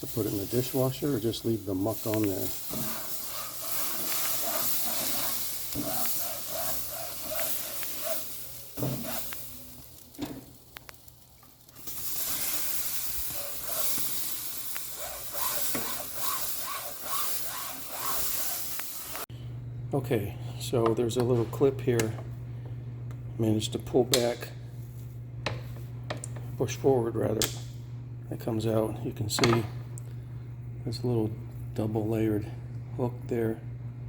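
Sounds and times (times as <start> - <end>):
brush scrubbing grill grates: 0.0 - 10.1, 11.8 - 19.2
water sizzling into steam: 0.0 - 19.3.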